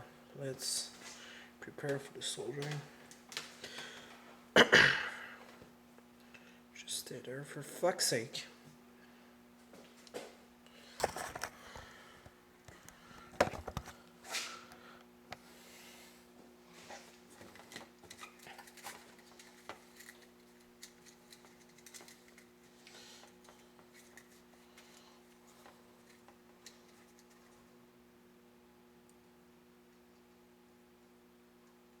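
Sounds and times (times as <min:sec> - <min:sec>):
low electrical hum: 0:00.0 - 0:32.0
wires and tools clattering: 0:16.9 - 0:27.7.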